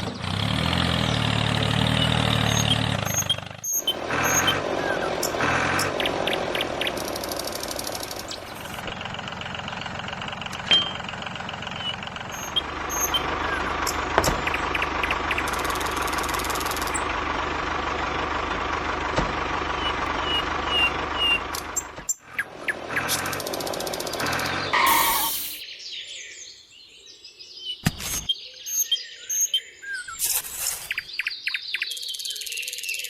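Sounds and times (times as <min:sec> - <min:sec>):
truck engine running: 0:00.0 - 0:25.6.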